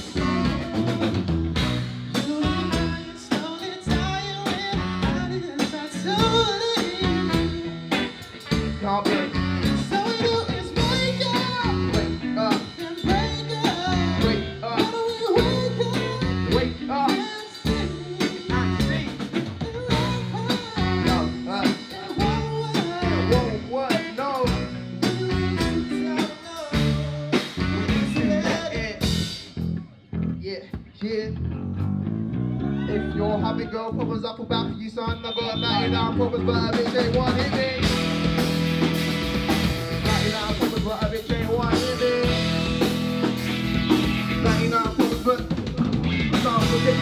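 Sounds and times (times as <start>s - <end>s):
person singing: 0.0s - 1.3s, 2.1s - 29.4s, 39.9s - 47.0s
drum kit beat: 0.0s - 29.7s, 36.8s - 47.0s
bass and guitar: 0.0s - 47.0s.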